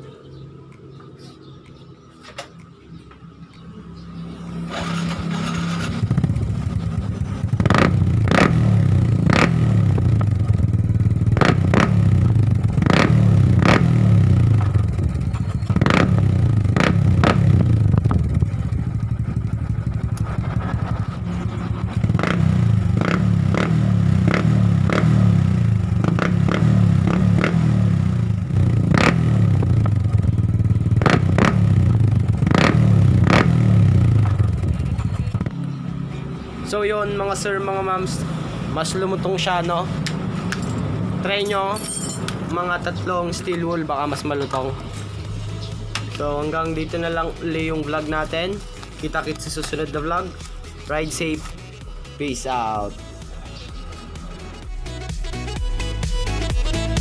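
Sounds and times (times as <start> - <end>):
motorcycle engine revving: 2.4 - 57.0
exhaust cracks: 4.6 - 35.6.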